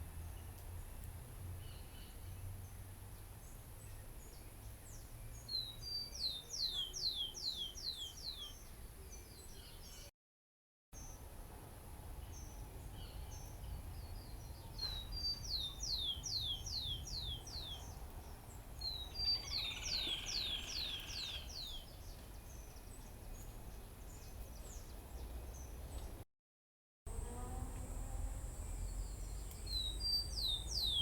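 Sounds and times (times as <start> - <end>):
songbird whistling song: 5.3 - 10.0, 12.4 - 18.0, 18.8 - 22.2, 28.6 - 31.0
faint bird chirps: 18.8 - 21.8.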